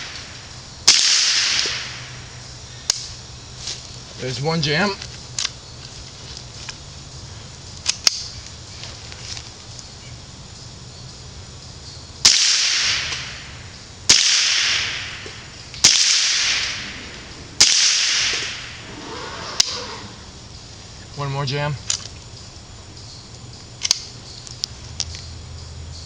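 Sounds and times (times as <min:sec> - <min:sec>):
rifle shots echoing: 0:00.9 - 0:02.2, 0:12.2 - 0:13.5, 0:14.1 - 0:19.8.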